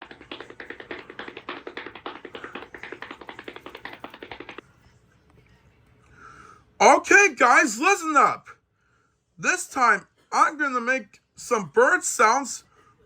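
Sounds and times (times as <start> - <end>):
fast tapping clicks: 0.0 - 4.6.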